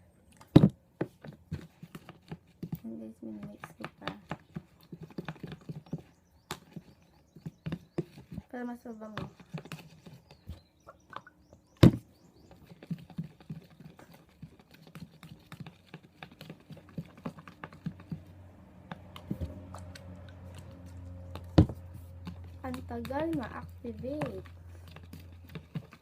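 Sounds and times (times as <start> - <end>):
spoon stirring sticky mixture: 1.1 - 26.0.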